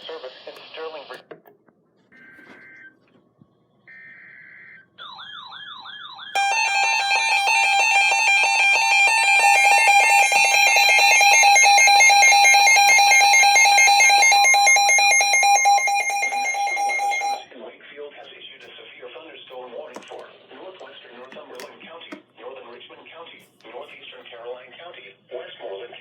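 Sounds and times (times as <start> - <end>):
harsh two-tone attention signal: 6.4 - 17.5.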